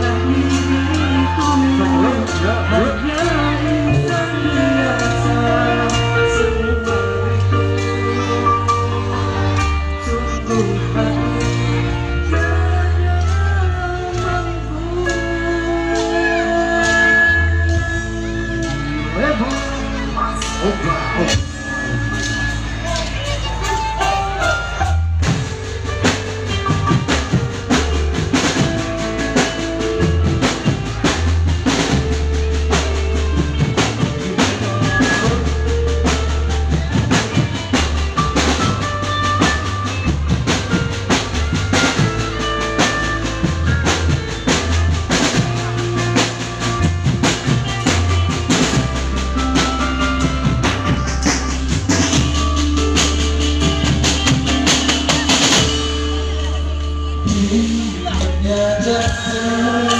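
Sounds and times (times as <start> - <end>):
drum kit beat: 0.0 - 59.9
live band playing pop music: 0.0 - 59.9.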